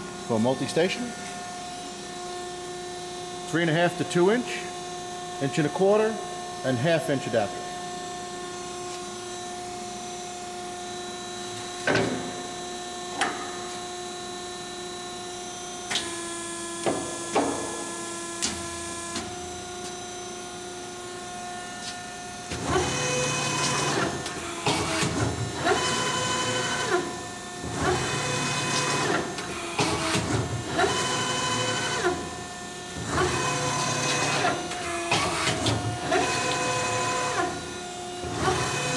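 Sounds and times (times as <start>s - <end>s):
whirring motor pulses: 22.5s - 38.9s.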